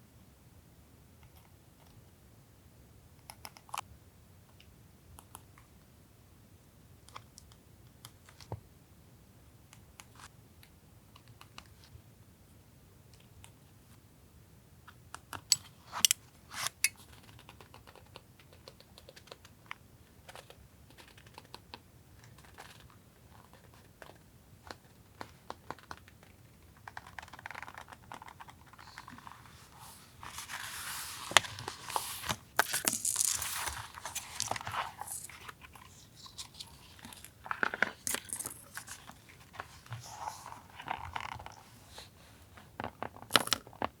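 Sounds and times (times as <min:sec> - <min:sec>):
paper rustling and crinkling: 0:28.6 - 0:43.3.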